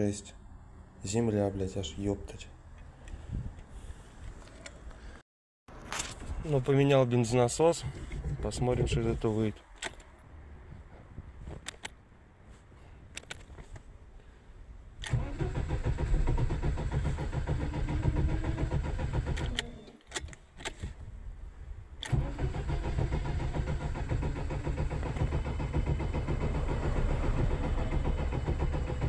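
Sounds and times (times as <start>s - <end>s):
car engine running: 22.3s - 29.0s.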